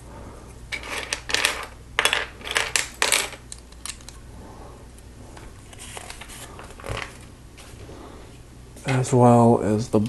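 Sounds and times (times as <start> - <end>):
plastic bricks clattering: 0.7 - 4.2.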